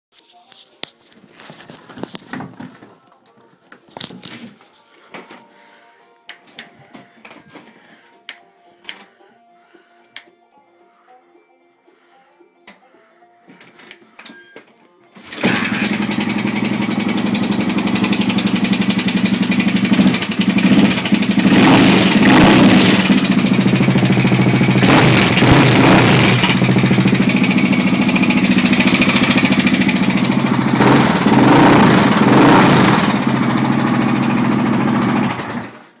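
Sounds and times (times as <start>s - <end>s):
motorcycle engine revving: 15.2s - 35.9s.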